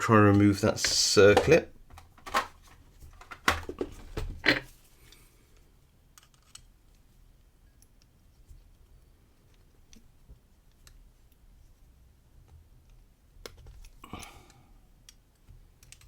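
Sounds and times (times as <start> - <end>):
small metal clicks and knocks: 6.2 - 6.7.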